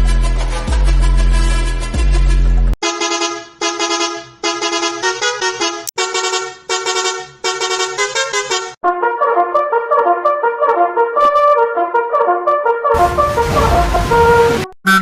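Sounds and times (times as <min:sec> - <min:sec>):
bass-heavy music: 0:00.0 - 0:02.8, 0:08.8 - 0:15.0
musical bus horn blasts: 0:00.1 - 0:14.8.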